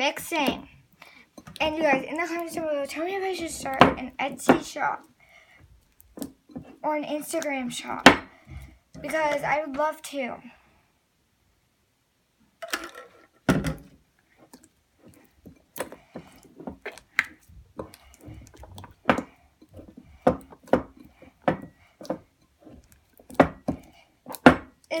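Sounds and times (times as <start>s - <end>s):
slime clicking and knocking: 5.9s - 6.8s, 13.5s - 24.9s.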